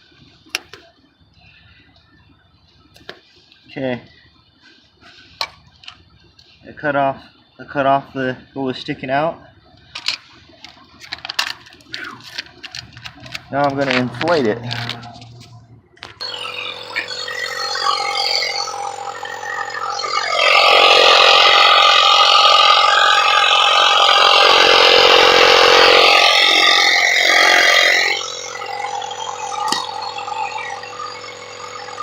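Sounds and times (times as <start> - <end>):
tire inflator compressor running: 16.1 - 32.0.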